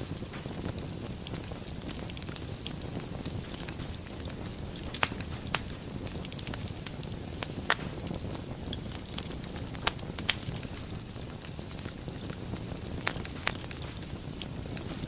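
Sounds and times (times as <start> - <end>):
fire crackling and popping: 0.0 - 15.0.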